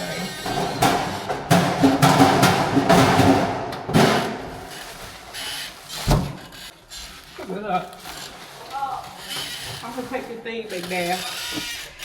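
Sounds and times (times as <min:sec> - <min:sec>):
music with wood-block and drums: 0:00.5 - 0:04.4.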